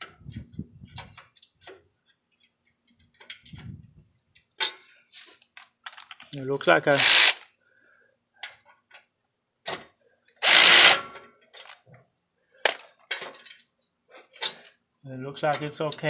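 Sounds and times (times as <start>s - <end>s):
hand tools clicking on metal: 6.9s - 7.4s, 10.4s - 11.0s
rasping burst: 6.9s - 7.4s, 10.4s - 11.0s.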